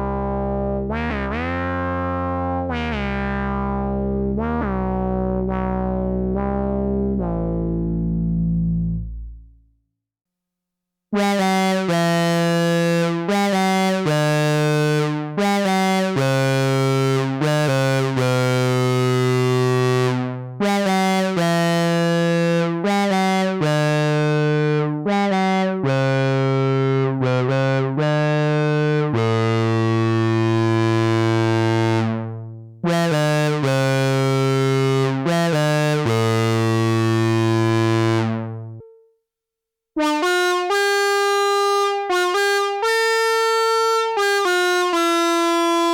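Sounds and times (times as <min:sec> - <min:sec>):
buzzy synthesizer notes: 0:00.0 - 0:09.5, 0:11.2 - 0:39.0.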